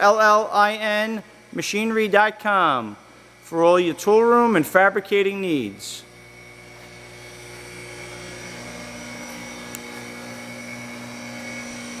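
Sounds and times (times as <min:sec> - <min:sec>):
grinder motor humming with whine: 0:02.7 - 0:12.0.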